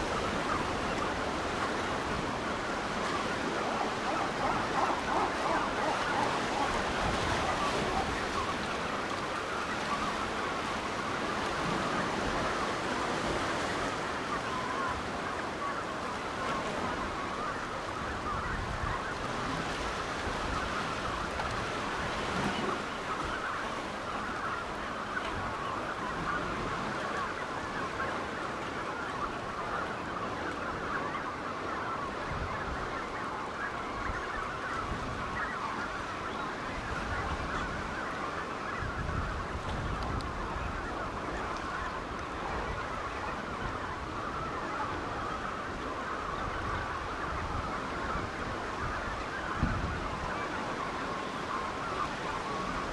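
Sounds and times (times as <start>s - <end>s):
surf and wind rushing: 0.0s - 17.2s
chorus of birds calling: 0.0s - 52.9s.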